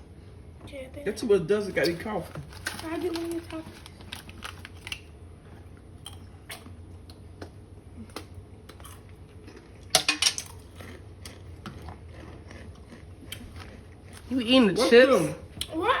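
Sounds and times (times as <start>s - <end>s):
tableware clinking: 10.0s - 10.6s.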